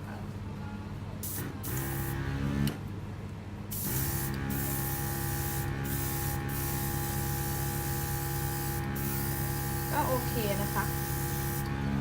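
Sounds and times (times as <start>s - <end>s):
compressor motor humming: 1.3s - 2.8s, 3.8s - 12.0s
airbrush spraying hiss: 3.8s - 11.7s.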